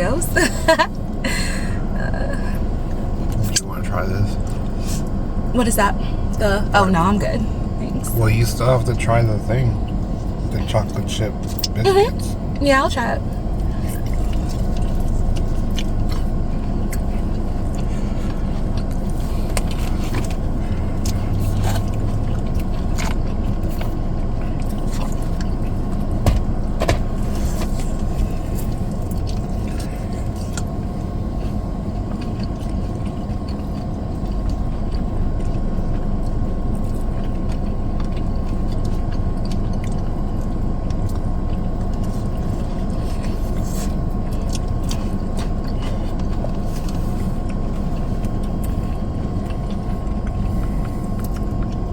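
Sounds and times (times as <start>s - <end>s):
car cabin rumble and hum: 0.0s - 51.9s
food crunching while eaten: 13.2s - 51.9s.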